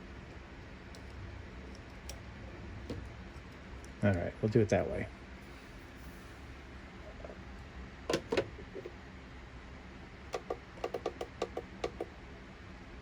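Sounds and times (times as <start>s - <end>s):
light clicks and taps: 0.9s - 2.2s, 2.9s - 4.6s.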